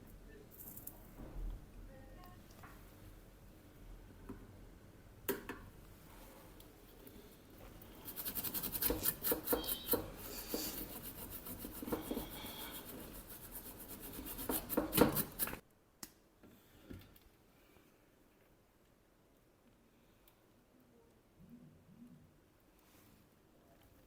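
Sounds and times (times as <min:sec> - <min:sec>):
hand tool scraping hard surface: 0:08.0 - 0:15.6.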